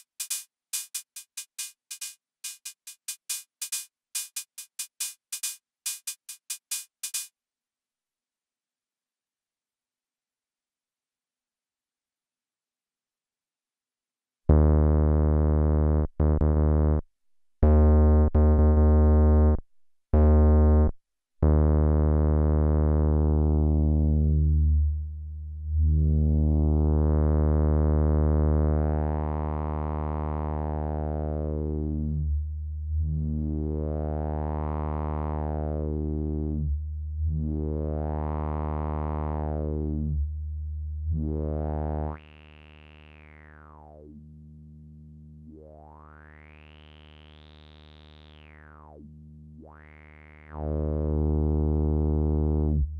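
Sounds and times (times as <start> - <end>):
buzzy analog bass synth note: 14.5 - 17.0, 17.6 - 52.9.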